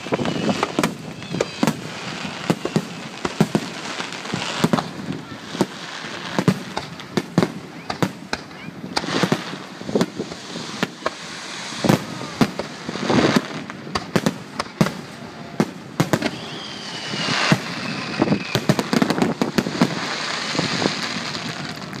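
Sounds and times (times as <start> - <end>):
fireworks bangs: 0.0 - 22.0
fireworks crackling: 0.0 - 22.0
firework whistle falling: 16.1 - 22.0.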